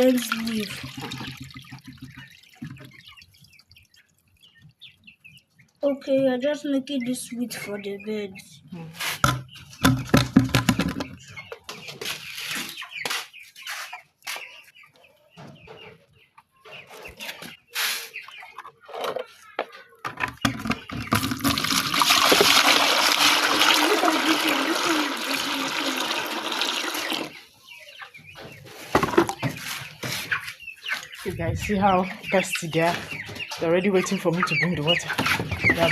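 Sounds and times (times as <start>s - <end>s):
liquid pouring: 0.0s - 4.4s, 21.1s - 27.4s
chickens clucking: 0.0s - 35.9s
knocks and handling sounds: 18.5s - 21.6s, 28.8s - 31.1s.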